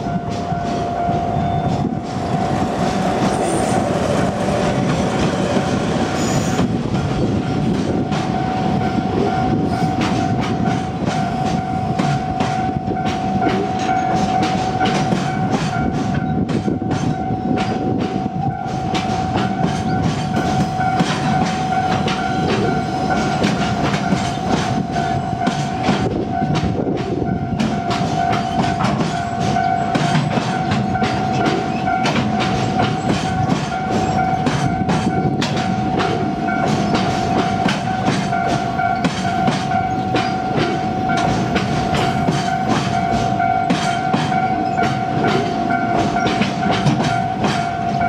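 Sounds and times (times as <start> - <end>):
steady high tone: 0.0 - 16.3, 27.2 - 48.0
train wheels clicking over rail joints: 0.0 - 48.0.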